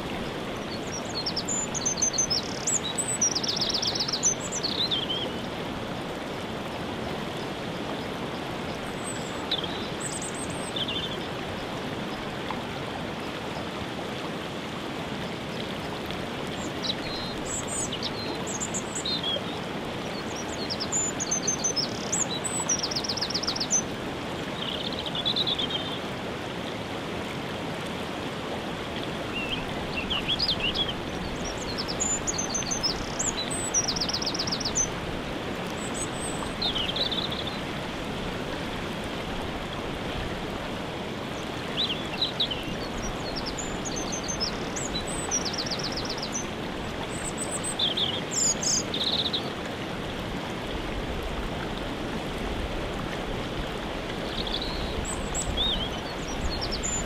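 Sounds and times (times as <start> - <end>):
waterfall rushing: 0.0 - 57.0
small birds chirping and trilling: 0.6 - 5.6, 16.6 - 23.9, 29.3 - 35.0, 35.7 - 37.7, 41.4 - 49.5, 54.3 - 57.0.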